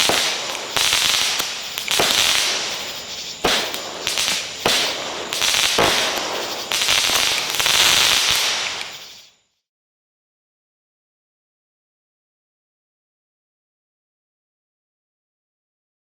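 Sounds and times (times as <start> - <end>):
firework launch thumps: 0.0 - 9.1
firework stars crackling: 0.0 - 9.4.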